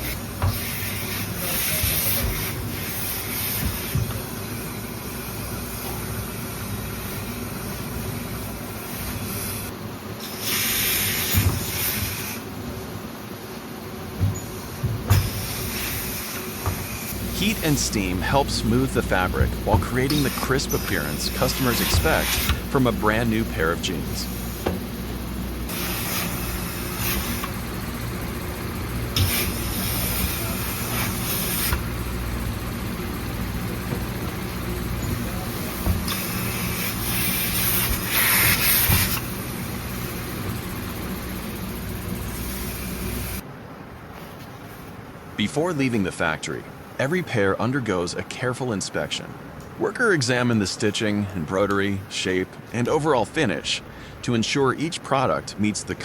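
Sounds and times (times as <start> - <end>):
steam hissing: 0.0 - 43.4
steady machine noise: 0.0 - 43.8.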